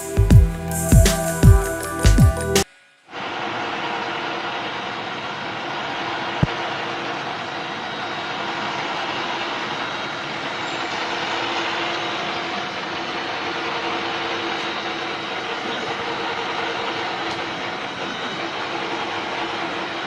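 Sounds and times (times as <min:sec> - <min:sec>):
industrial machine running: 0:03.2 - 0:20.0.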